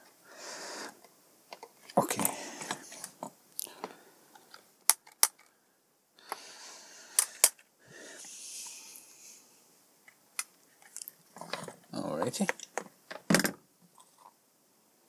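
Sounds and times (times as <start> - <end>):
plastic parts clicking: 4.4 - 5.5
hissing noise: 7.9 - 9.6.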